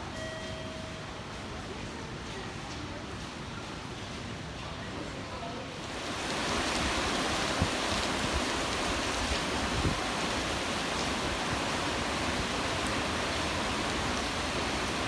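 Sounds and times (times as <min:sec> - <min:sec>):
wind and rain rushing: 0:05.7 - 0:15.0
wind thumps on microphone: 0:06.6 - 0:10.1.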